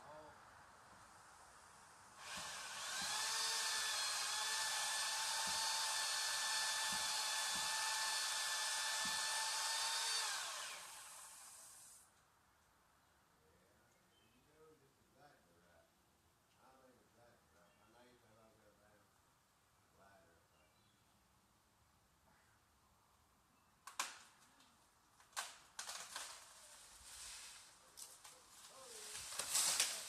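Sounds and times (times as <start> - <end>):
power saw whining: 2.2 - 12.0.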